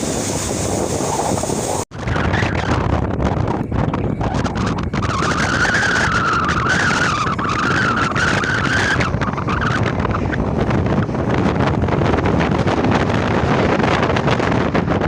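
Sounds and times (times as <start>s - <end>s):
jet engines roaring: 0.0s - 15.0s
wind buffeting microphone: 0.0s - 15.0s.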